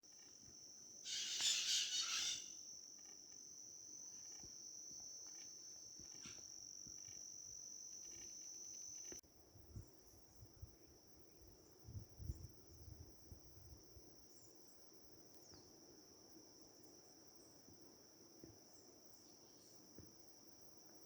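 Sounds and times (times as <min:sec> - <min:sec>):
insects trilling: 0:00.0 - 0:09.2
bird song twitter: 0:01.0 - 0:02.6
faint bird chirps: 0:01.0 - 0:03.2.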